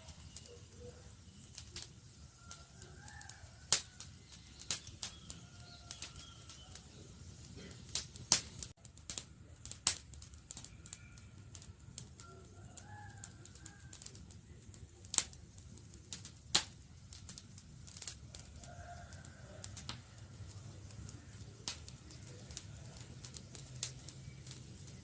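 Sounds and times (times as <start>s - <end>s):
faint bird calls: 0.0s - 7.9s
campfire crackling: 0.0s - 25.0s.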